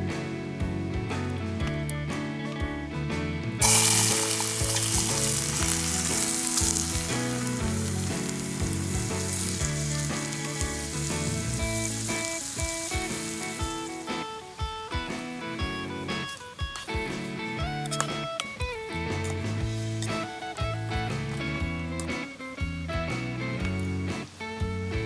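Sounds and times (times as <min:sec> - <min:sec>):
acoustic guitar music: 0:00.0 - 0:25.0
food sizzling in hot oil: 0:03.6 - 0:18.3, 0:19.4 - 0:21.6.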